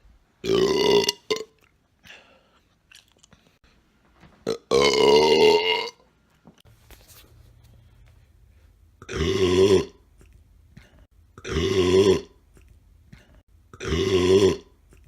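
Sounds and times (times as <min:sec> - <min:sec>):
person burping: 0:00.4 - 0:01.7, 0:04.4 - 0:06.0, 0:09.0 - 0:10.0, 0:11.4 - 0:12.4, 0:13.7 - 0:14.8.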